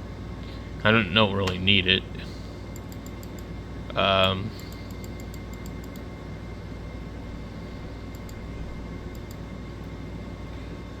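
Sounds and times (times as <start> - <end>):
room hum and hiss: 0.0 - 11.0
faint rapid clicking: 8.1 - 8.4, 9.1 - 9.4.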